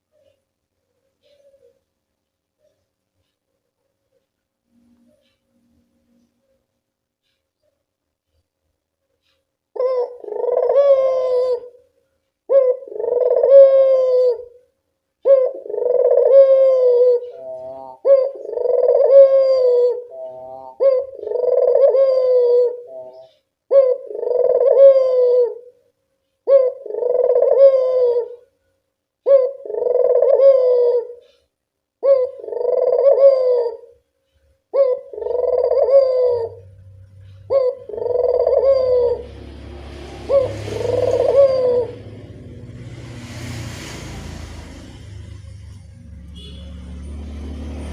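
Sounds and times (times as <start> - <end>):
dove cooing: 9.8 - 11.8, 12.5 - 14.6, 15.2 - 25.7, 26.5 - 28.5, 29.2 - 31.4, 32.0 - 34.0, 34.7 - 46.5.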